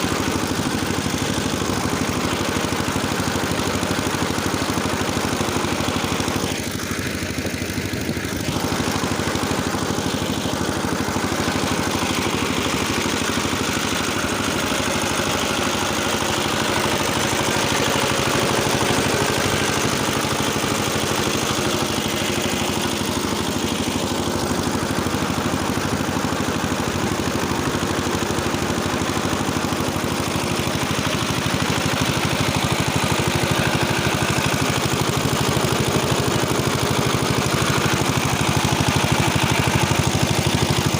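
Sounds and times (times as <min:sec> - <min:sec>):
rotary tiller engine running: 0:00.0 - 0:40.9.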